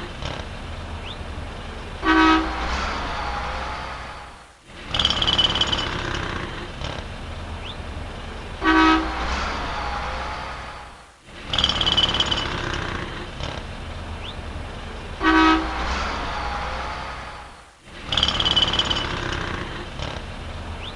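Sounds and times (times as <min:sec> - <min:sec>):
rumble of passing vehicles: 0:00.0 - 0:20.9
car horn honking: 0:02.0 - 0:03.8, 0:08.6 - 0:09.4, 0:15.2 - 0:17.4.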